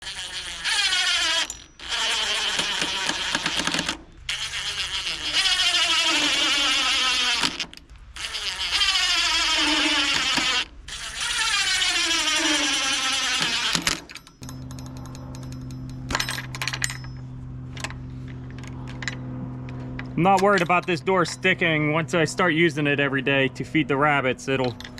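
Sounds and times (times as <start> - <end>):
power drill driving screws: 0.0 - 14.2.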